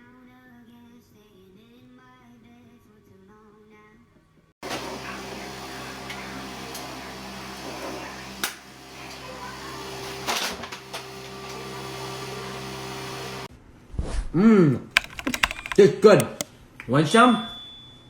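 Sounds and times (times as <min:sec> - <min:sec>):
mechanical hum with hiss: 0:04.6 - 0:13.5
sharp click: 0:15.0 - 0:16.5.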